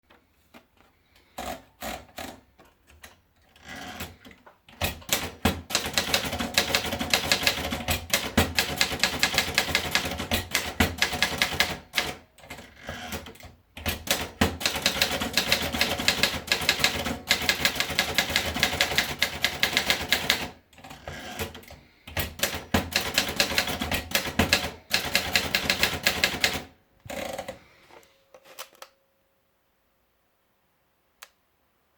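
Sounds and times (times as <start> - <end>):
typewriter keystrokes: 3.9 - 12.2, 13.1 - 20.6, 21.4 - 26.7.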